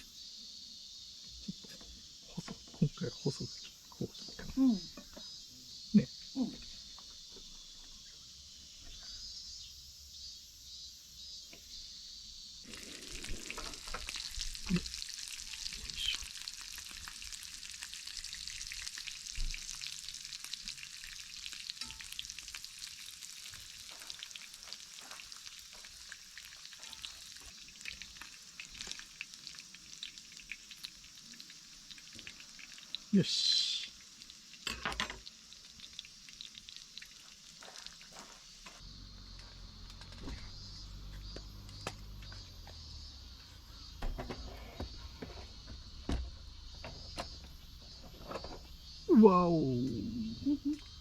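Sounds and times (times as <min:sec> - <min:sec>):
steak sizzling in a frying pan: 0:12.7 - 0:38.6.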